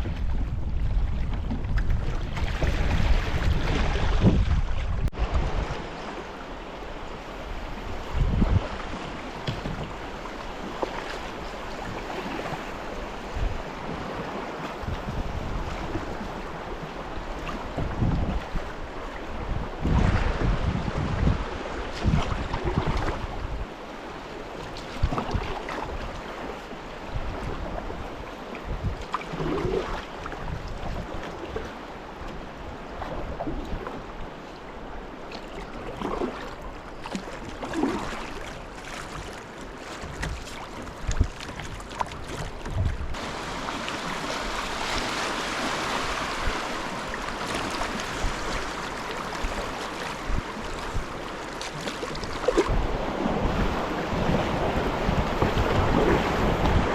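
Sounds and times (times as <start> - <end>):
wind on microphone: 0.0 - 56.9
river water rushing: 43.1 - 56.9.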